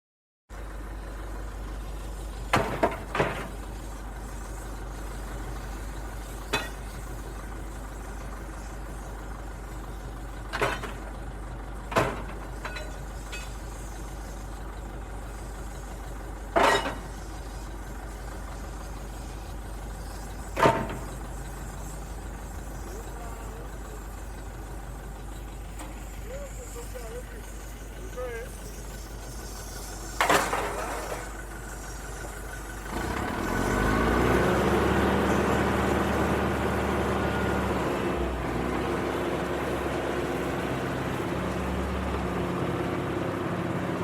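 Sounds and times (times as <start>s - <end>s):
excavator diesel engine rumbling: 0.5s - 44.0s
sharp metal clanks: 6.5s - 7.0s, 11.9s - 13.7s, 16.6s - 17.2s.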